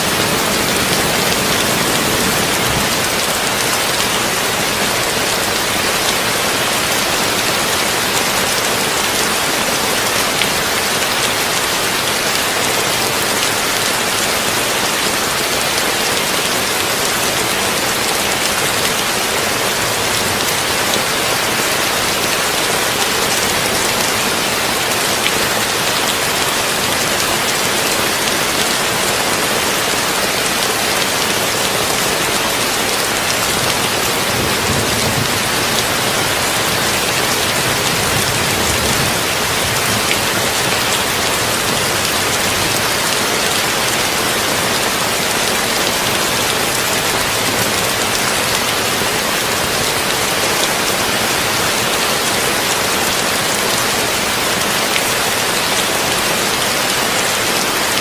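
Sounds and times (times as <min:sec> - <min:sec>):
heavy rain on a tin roof: 0:00.0 - 0:58.0.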